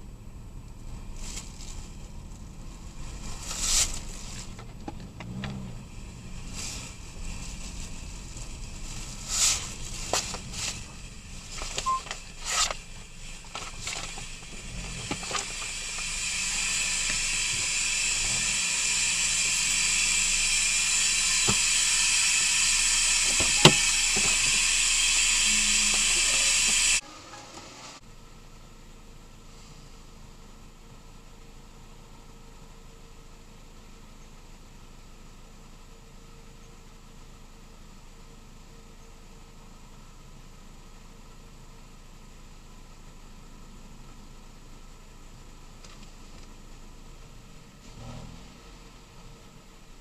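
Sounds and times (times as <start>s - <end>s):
steady hiss: 0.2s - 28.0s.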